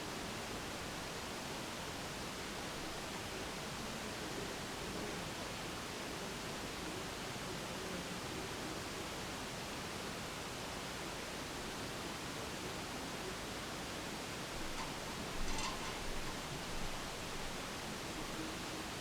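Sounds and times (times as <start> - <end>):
steady background hiss: 0.0 - 19.0.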